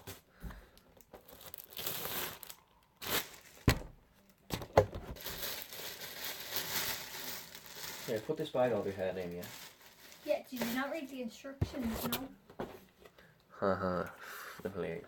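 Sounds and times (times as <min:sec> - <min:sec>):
plastic packaging crinkling: 0:01.0 - 0:03.9, 0:05.2 - 0:11.2.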